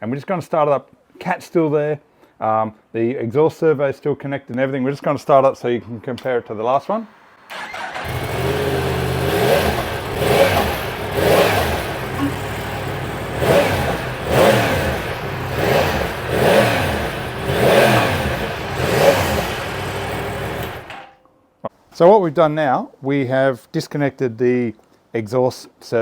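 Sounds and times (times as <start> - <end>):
motorcycle engine idling and revving: 7.5 - 21.1
motorcycle engine starting: 7.5 - 21.2.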